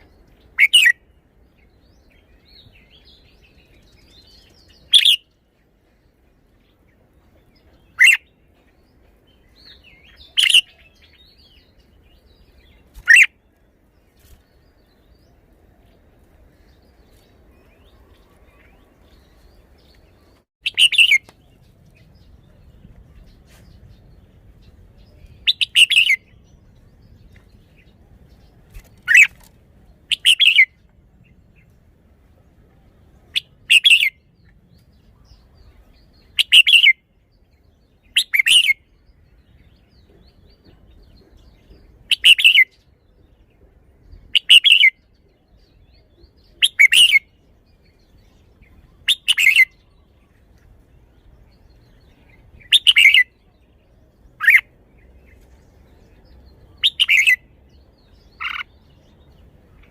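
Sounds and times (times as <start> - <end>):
bird singing short phrases: 16.7 - 27.3, 51.1 - 59.9.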